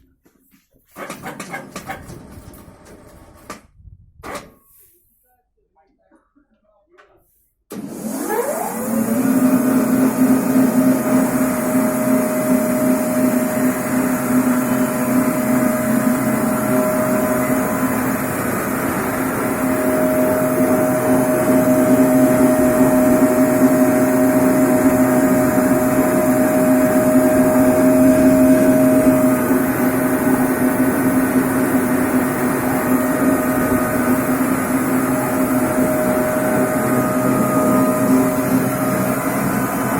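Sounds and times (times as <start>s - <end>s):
band saw machine hum: 8.5s - 39.9s.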